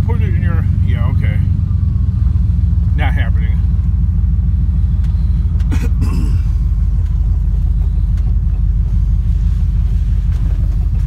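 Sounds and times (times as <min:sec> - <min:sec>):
vehicle engine and road rumble: 0:00.0 - 0:11.0.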